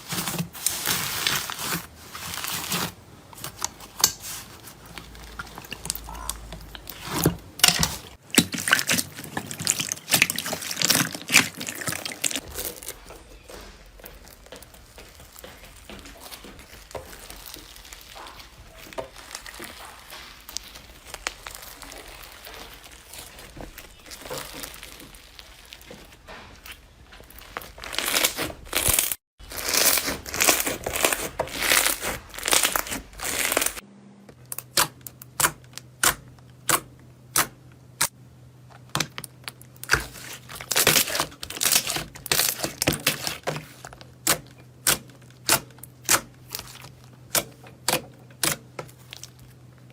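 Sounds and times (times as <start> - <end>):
slime squeezed by hand crackling: 15.2 - 33.8.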